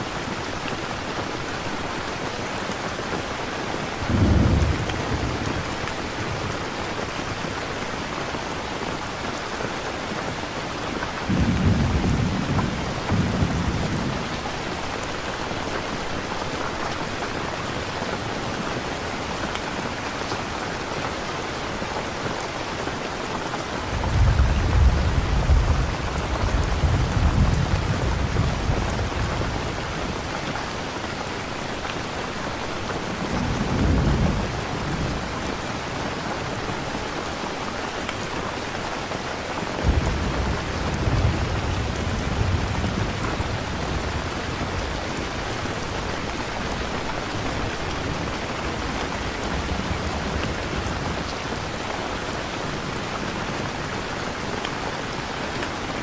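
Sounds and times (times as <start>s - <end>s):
heavy rain: 0.0s - 56.0s
rolling thunder: 4.1s - 5.7s, 24.0s - 30.2s, 39.8s - 46.1s.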